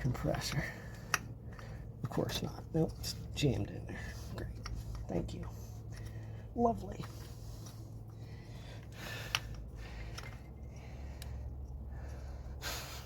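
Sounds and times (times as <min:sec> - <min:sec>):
steady low hum: 0:00.0 - 0:13.0
soft rustle of wire handling: 0:02.0 - 0:12.2.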